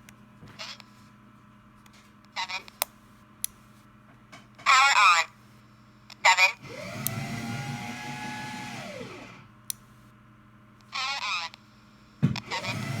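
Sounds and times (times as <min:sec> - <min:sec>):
radio speaker whine: 0:02.3 - 0:02.8.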